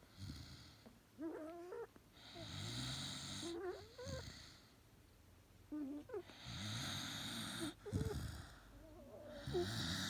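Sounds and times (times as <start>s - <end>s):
dog snoring: 5.8s - 10.0s.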